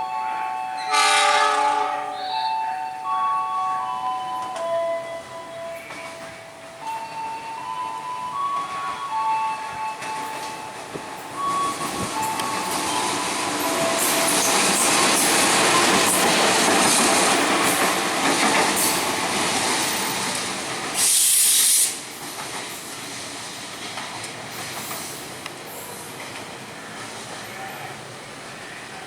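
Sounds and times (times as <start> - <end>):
train wheels rattling: 4.0 - 27.2
sharp hiss: 21.0 - 22.2.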